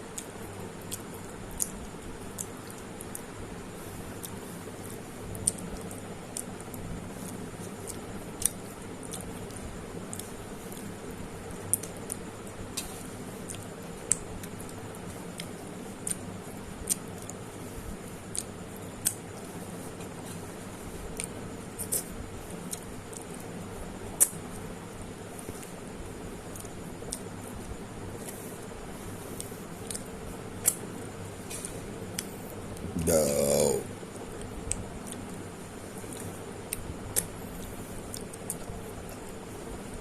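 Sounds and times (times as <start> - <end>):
low background hum: 0.0 - 40.0
mouth clicks and smacks: 0.2 - 3.3, 21.1 - 23.5, 24.1 - 24.5, 29.3 - 30.8, 36.1 - 37.4, 38.0 - 38.7
wet chewing: 29.3 - 30.8.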